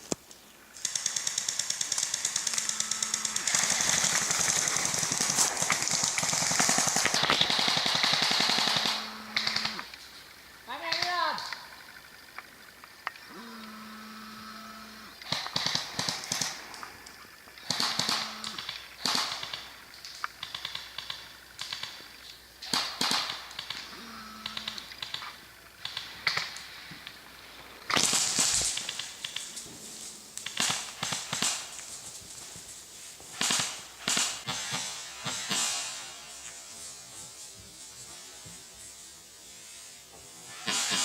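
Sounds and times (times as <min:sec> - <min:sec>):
airsoft guns firing in bursts: 0:00.8 - 0:09.9, 0:15.2 - 0:17.0, 0:17.6 - 0:27.2, 0:27.8 - 0:29.8, 0:30.4 - 0:32.5, 0:33.2 - 0:36.4, 0:40.5 - 0:41.0.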